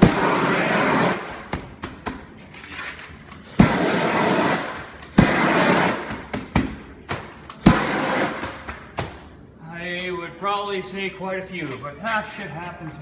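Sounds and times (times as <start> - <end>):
heat gun flame blasts: 0.0 - 1.8, 3.4 - 9.3.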